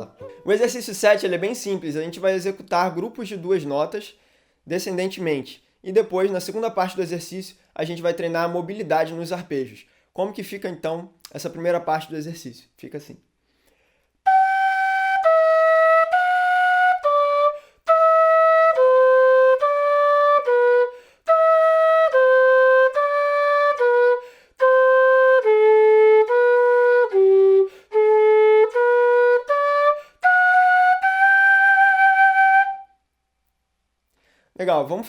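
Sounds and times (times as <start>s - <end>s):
notched flute playing: 0.0s - 0.8s, 14.3s - 33.0s.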